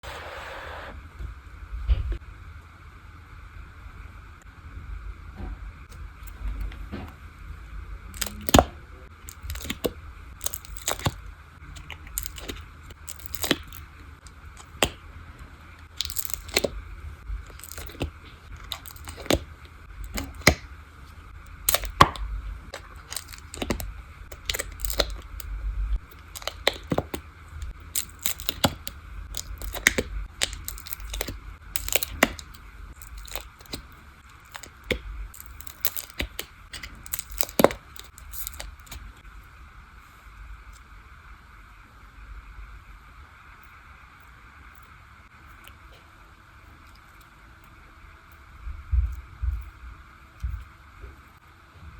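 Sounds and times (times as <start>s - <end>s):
crackling tearing peel: 8.1s - 15.1s, 15.8s - 16.8s, 17.4s - 20.7s, 21.4s - 39.2s.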